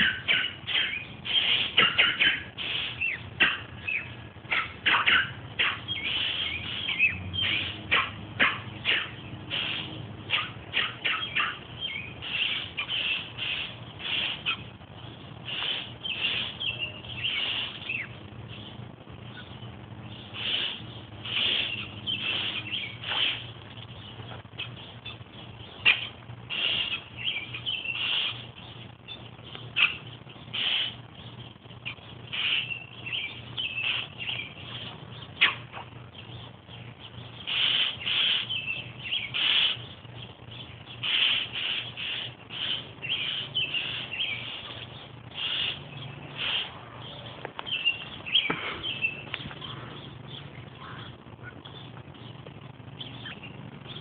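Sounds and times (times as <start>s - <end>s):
pet bird chattering: 0.0s - 14.7s, 15.4s - 18.2s, 24.5s - 31.1s, 31.8s - 35.7s, 37.3s - 40.1s, 40.8s - 51.8s.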